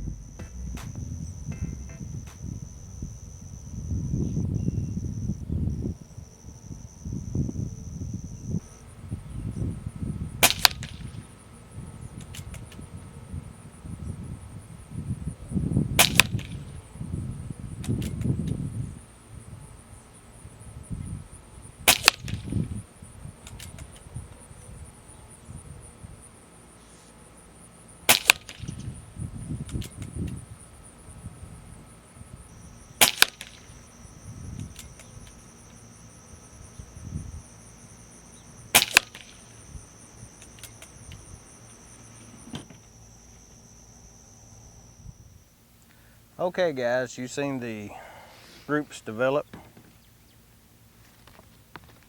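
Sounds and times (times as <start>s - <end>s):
crickets chirping: 0.0s - 52.0s
air pistol shot crack: 10.4s - 11.2s, 16.0s - 16.7s, 21.9s - 22.6s, 28.1s - 28.9s, 33.0s - 33.8s, 38.7s - 39.6s.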